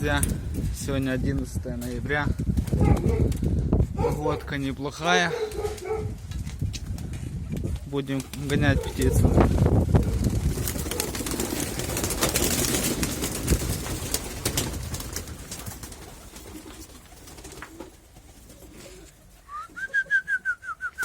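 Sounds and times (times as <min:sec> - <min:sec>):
pigeons cooing: 0:05.2 - 0:06.2, 0:08.6 - 0:14.7.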